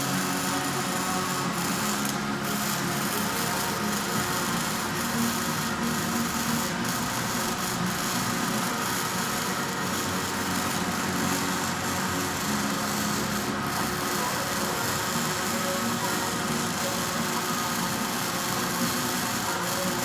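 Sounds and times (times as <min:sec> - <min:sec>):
arc welding crackling hiss: 0:00.0 - 0:20.0.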